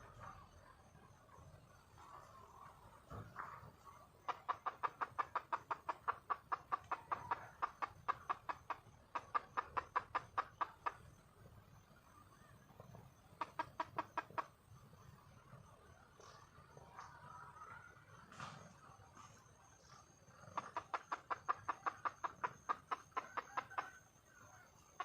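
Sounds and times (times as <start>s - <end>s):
hen clucking rapidly: 1.9s - 15.1s, 19.5s - 25.0s.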